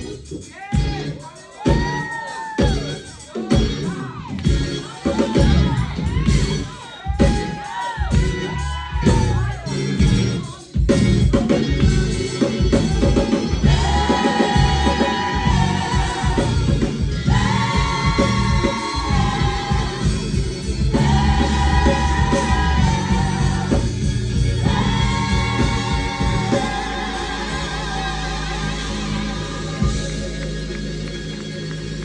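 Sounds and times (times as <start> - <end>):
live band with drums and bass: 0.0 - 32.0
steady instrumental tone: 0.0 - 32.0
gospel choir singing: 12.0 - 32.0.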